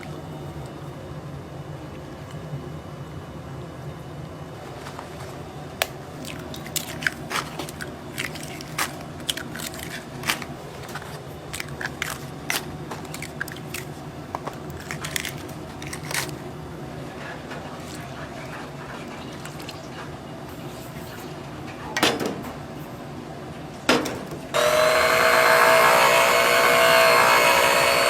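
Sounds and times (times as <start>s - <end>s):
food handling clicks and crackles: 4.6s - 20.7s.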